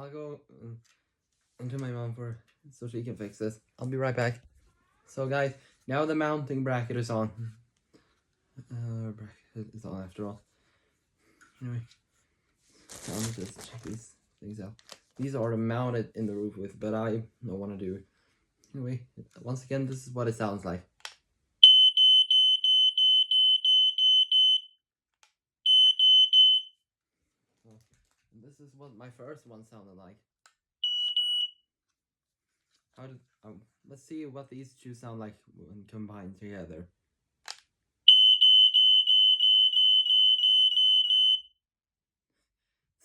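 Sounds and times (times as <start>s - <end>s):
smoke alarm beeping: 21.6s - 24.7s, 25.7s - 26.7s, 30.8s - 31.6s, 38.1s - 41.5s.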